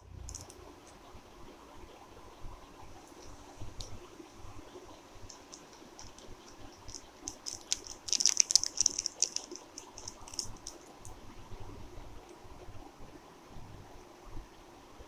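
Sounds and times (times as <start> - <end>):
fizzing tablet in water: 3.0 - 11.2.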